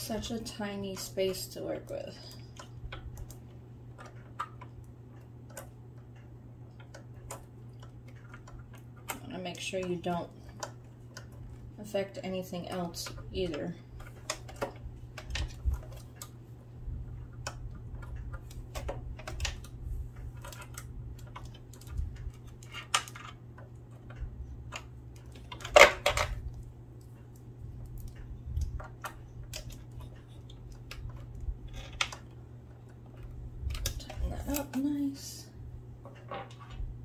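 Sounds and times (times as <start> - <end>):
steady low hum: 0.0 - 37.0
small metal parts clicking: 20.3 - 27.1, 27.8 - 35.0.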